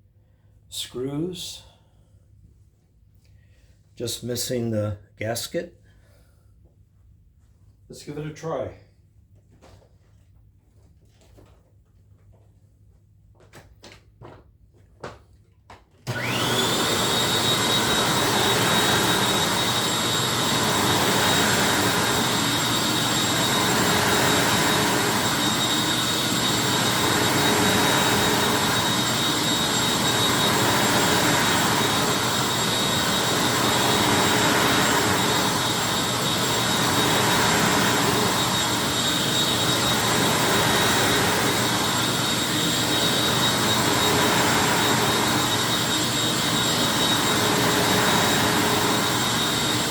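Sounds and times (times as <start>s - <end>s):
vacuum cleaner motor whine: 16.1s - 49.9s.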